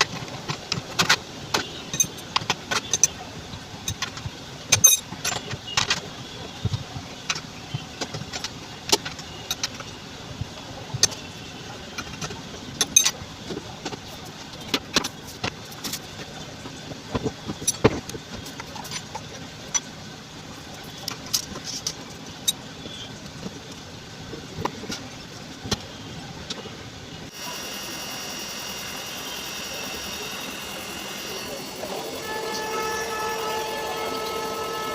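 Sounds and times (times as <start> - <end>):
tools and parts clinking: 0.0 - 10.0, 11.0 - 16.3, 17.1 - 19.9.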